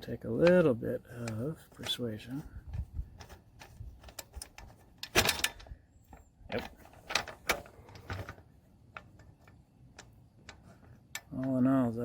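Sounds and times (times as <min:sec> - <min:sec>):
small metal clicks and rattles: 0:02.7 - 0:11.9.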